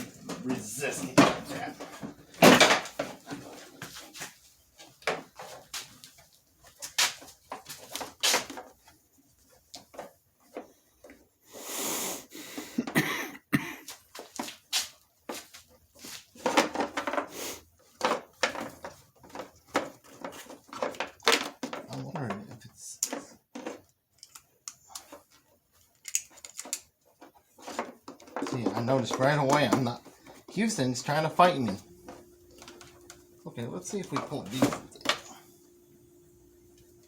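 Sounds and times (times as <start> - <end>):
handling clicks and knocks: 17.9 - 35.4.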